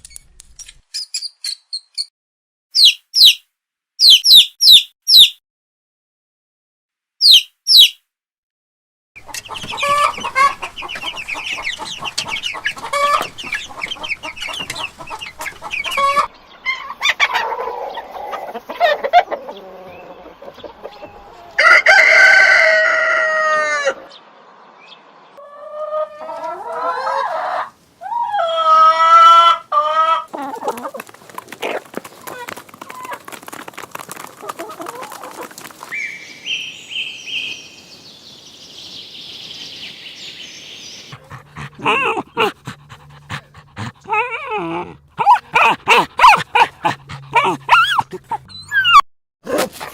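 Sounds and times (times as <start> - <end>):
hens clucking: 9.2 - 24.2, 25.4 - 36.0, 41.1 - 49.9
rooster crowing: 21.1 - 24.2.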